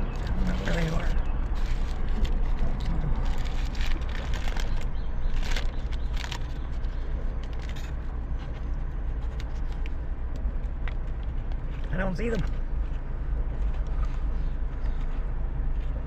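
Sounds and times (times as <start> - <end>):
paper wrapper crinkling: 0.0 - 10.0
steady low hum: 0.0 - 16.0.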